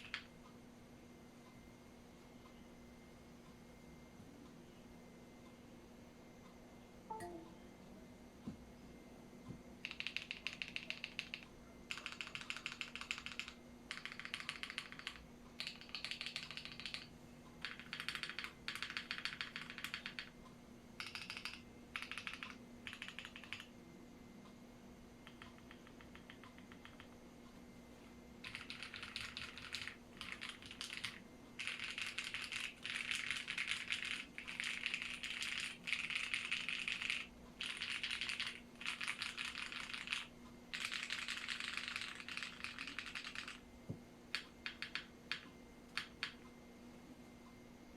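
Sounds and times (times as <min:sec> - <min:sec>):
mechanical keyboard typing: 0:00.0 - 0:00.3, 0:09.8 - 0:20.3, 0:21.0 - 0:23.7, 0:25.2 - 0:27.1, 0:28.4 - 0:43.6, 0:44.3 - 0:46.4.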